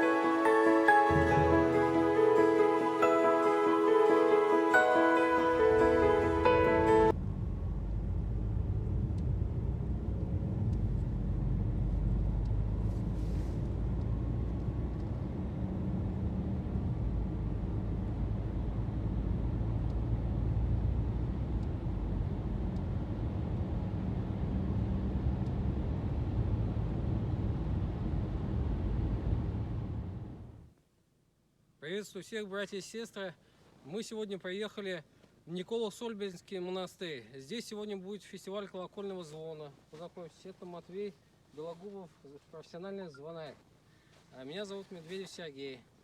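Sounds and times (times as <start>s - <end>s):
car engine and road rumble: 7.0s - 30.7s.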